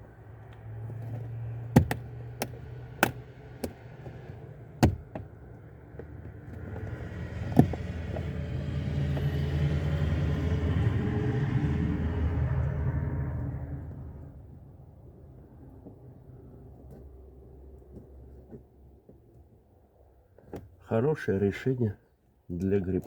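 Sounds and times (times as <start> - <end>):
sharp clicks and knocks: 0.9 - 5.4, 6.0 - 8.3.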